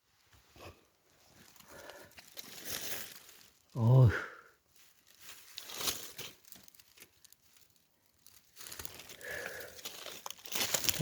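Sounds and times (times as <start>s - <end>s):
dry leaves rustling and crackling: 1.4s - 3.7s, 4.7s - 11.0s.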